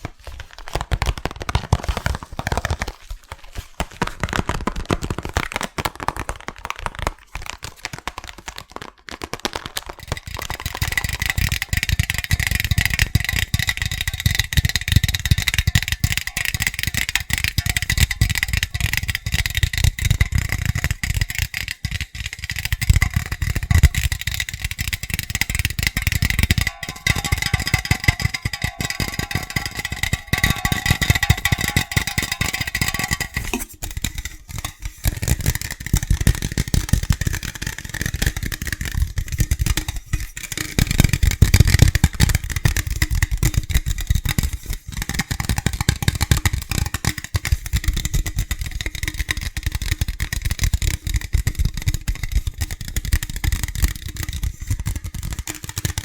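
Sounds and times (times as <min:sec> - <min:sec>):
fingers tapping hard objects: 0:09.6 - 0:38.8
ringing tones: 0:26.6 - 0:33.4.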